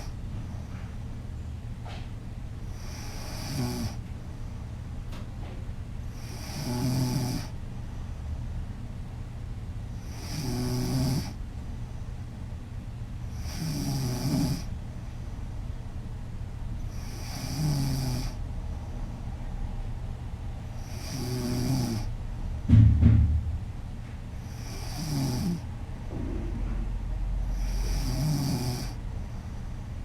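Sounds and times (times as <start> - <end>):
woman snoring: 2.9 - 4.0, 6.2 - 7.5, 10.2 - 11.3, 13.4 - 14.7, 17.0 - 18.4, 20.8 - 22.1, 24.6 - 25.6, 27.6 - 29.0.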